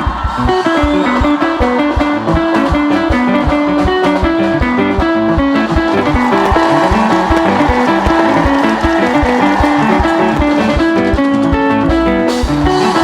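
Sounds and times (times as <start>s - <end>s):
driving drum beat: 0.0s - 13.0s
plucked electric guitar: 0.0s - 13.0s.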